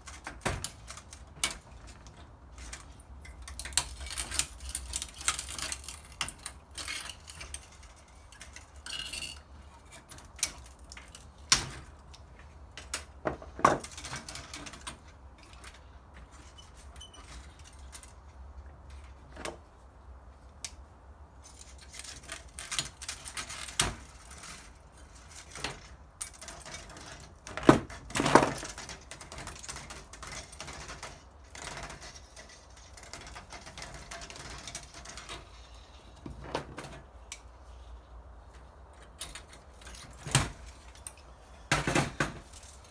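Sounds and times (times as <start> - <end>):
metal parts clinking: 3.3 - 9.5.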